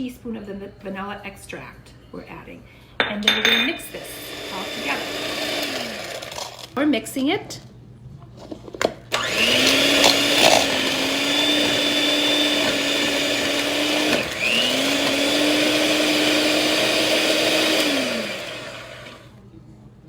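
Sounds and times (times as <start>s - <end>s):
electric kitchen mixer running: 3.9s - 6.7s, 9.1s - 19.4s.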